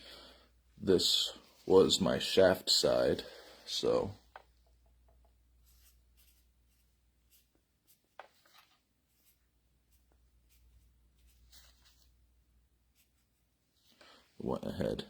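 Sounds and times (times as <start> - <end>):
marker pen scratching: 5.6 - 12.1.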